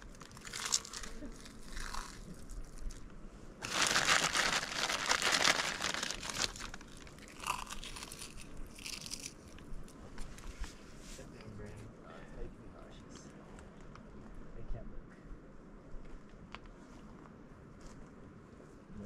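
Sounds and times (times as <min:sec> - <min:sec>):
plastic snack bag crinkling: 0:00.0 - 0:03.0, 0:03.6 - 0:09.6
snacks crunching: 0:00.1 - 0:03.0, 0:03.6 - 0:10.0.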